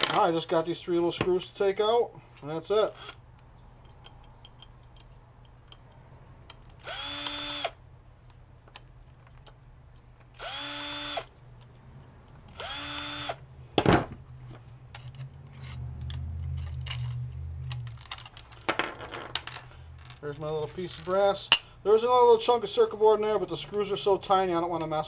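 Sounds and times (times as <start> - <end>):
power drill spinning: 6.8 - 7.8, 10.4 - 11.3, 12.5 - 13.4.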